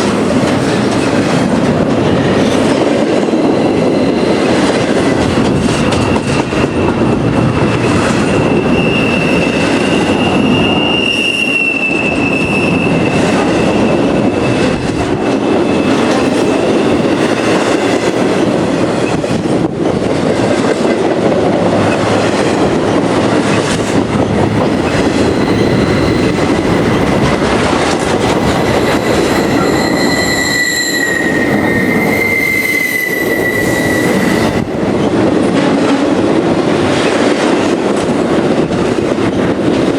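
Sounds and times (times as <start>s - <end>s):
freight train rumbling past: 0.0s - 39.9s
high wheel squeal: 5.8s - 16.0s, 24.6s - 34.8s.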